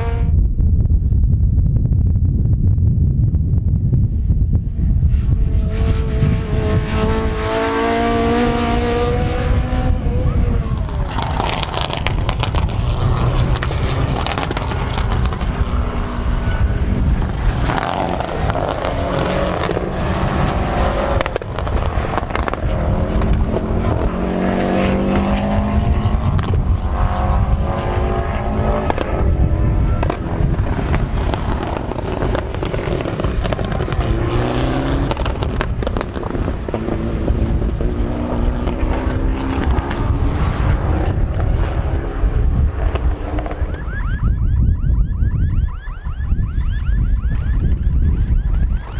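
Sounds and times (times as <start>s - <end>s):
race car engines revving: 0.0s - 0.3s, 4.2s - 44.5s.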